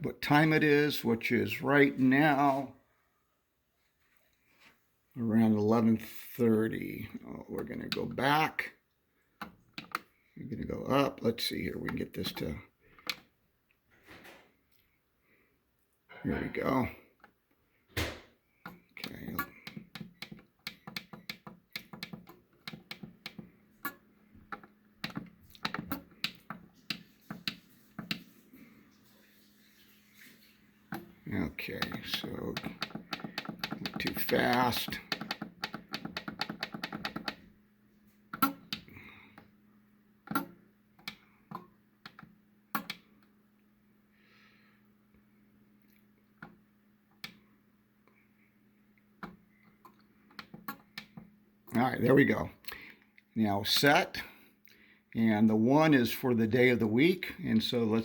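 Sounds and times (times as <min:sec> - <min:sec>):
faint steady hum: 0:00.0 - 0:58.0
thermostat push buttons clicking: 0:09.4 - 0:10.1, 0:18.7 - 0:28.2, 0:31.8 - 0:37.4, 0:40.3 - 0:43.0
thermostat button clicks: 0:40.3 - 0:43.0.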